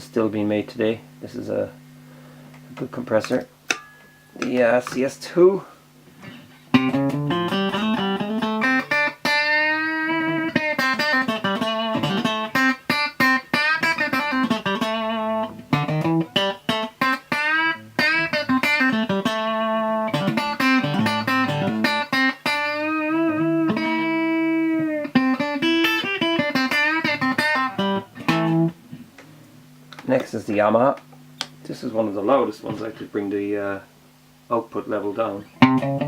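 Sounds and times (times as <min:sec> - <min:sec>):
electric guitar through amp: 0:06.2 - 0:31.2, 0:35.6 - 0:36.0.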